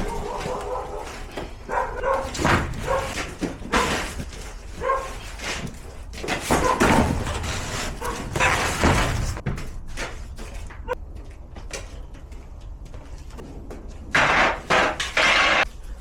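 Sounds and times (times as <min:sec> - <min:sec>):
dog yipping and barking: 0:00.0 - 0:03.2, 0:04.8 - 0:05.2
knocks and clatter: 0:00.0 - 0:10.9, 0:14.0 - 0:15.7.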